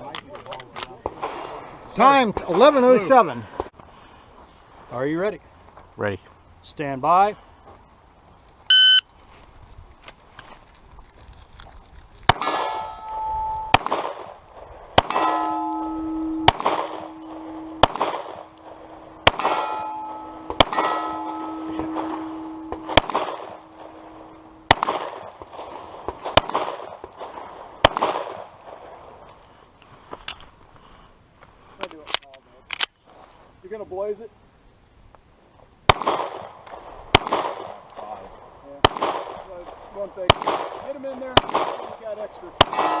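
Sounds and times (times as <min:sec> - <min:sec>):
pistol shots: 0:12.3 - 0:28.8, 0:35.9 - 0:37.9, 0:38.8 - 0:39.5, 0:40.2 - 0:43.0
steel targets ringing: 0:12.4 - 0:13.9, 0:15.0 - 0:25.3, 0:42.7 - 0:43.0.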